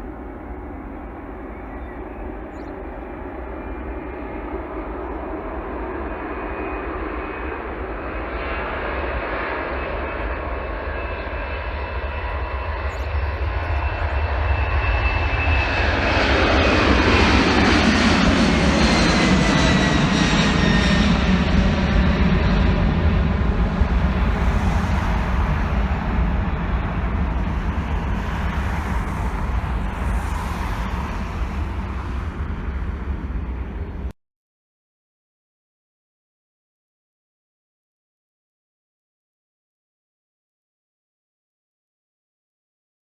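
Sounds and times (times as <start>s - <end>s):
jet engines of approaching aircraft: 0.0s - 34.2s.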